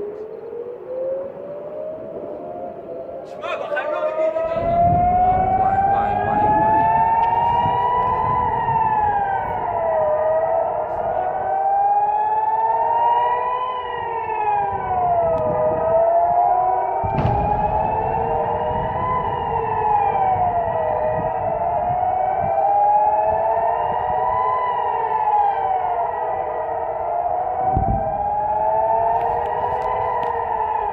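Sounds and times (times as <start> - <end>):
air-raid sirens wailing: 0.0 - 30.9
sudden thud: 17.1 - 19.2.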